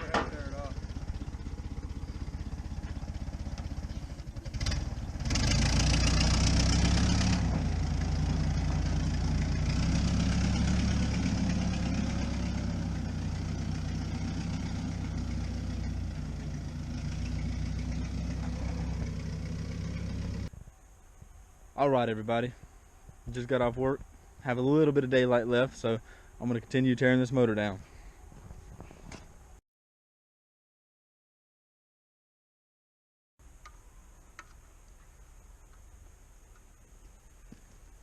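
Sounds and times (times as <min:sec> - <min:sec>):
vehicle engine revving: 0:00.0 - 0:20.5.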